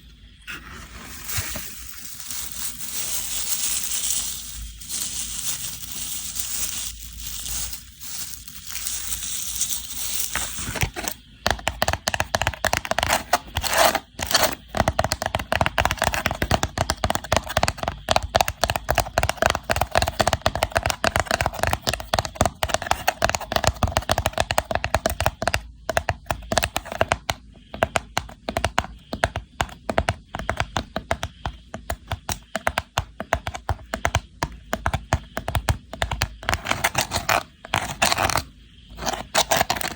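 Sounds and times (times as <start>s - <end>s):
hand rubbing rattan box: 0.5s - 15.2s
tapping and scratching on weave: 1.3s - 39.9s.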